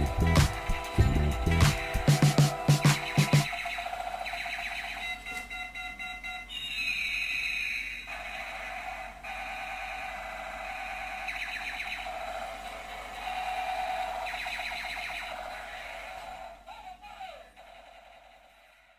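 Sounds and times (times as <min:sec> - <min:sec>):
electronic alarm clock tones: 0:00.0 - 0:08.1, 0:09.9 - 0:16.6.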